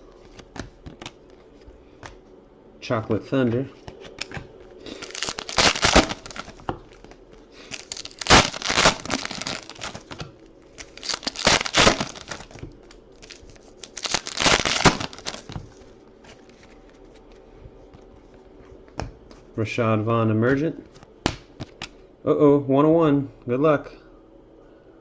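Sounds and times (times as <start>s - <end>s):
foil packs tearing open: 4.1s - 16.9s.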